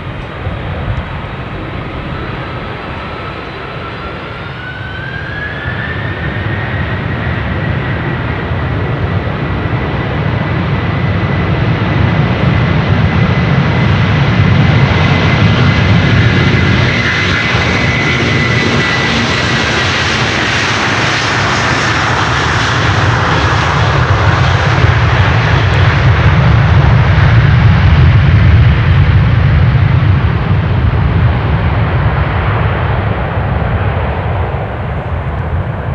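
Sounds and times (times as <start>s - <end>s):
airliner engines passing: 0.0s - 35.9s.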